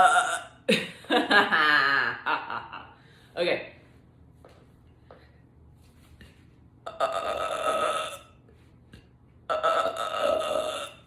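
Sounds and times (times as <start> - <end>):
woman burping loudly: 0.0 - 0.8, 6.9 - 8.4, 9.5 - 11.0.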